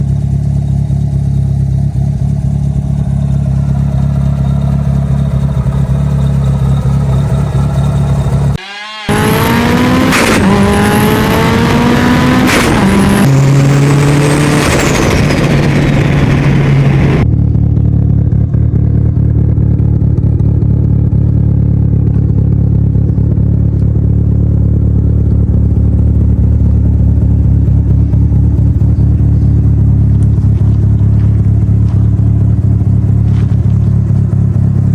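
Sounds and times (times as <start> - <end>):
car engine running: 0.0 - 34.9
turbo whistle: 8.6 - 11.2.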